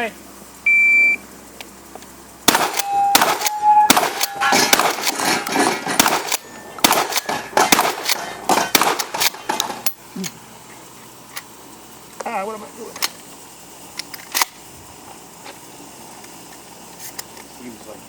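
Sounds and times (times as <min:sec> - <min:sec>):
shotgun shots: 0:02.5 - 0:09.7
steel targets ringing: 0:02.5 - 0:09.9.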